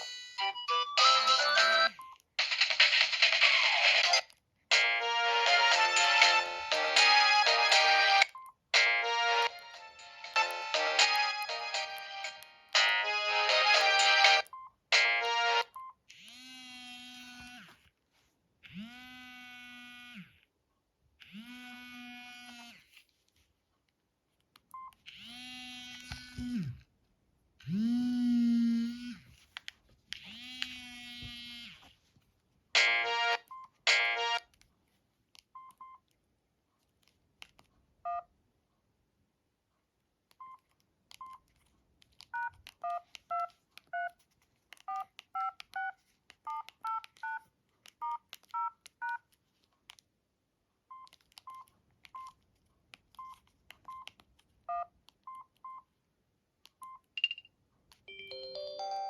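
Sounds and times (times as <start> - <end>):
phone keypad beeps: 42.3 - 44.2, 44.9 - 49.2, 50.9 - 52.4, 53.1 - 54.1, 54.7 - 55.9
dialing tones: 44.9 - 49.2.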